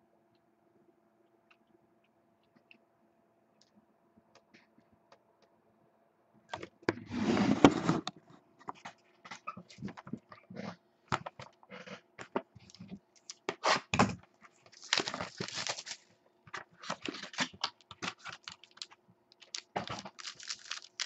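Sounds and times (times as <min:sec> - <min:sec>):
packaging crinkling: 0:14.6 - 0:16.1, 0:16.7 - 0:21.0
packaging being torn open: 0:14.8 - 0:16.0, 0:17.0 - 0:21.0.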